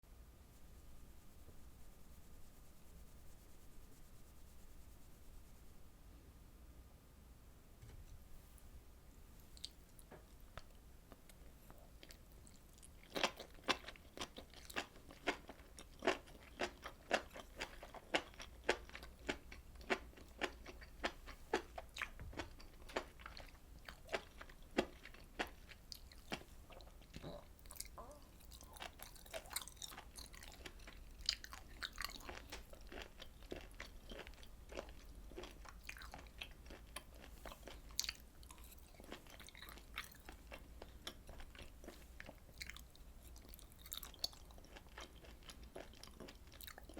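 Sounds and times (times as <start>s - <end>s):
chewing with mouth clicks: 9.4s - 46.9s.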